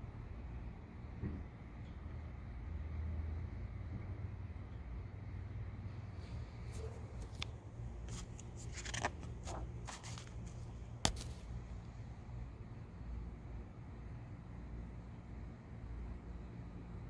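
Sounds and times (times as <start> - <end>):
steady low hum: 0.0 - 17.0
paper pages rustling: 6.7 - 11.5
sharp paper snap: 7.2 - 11.5.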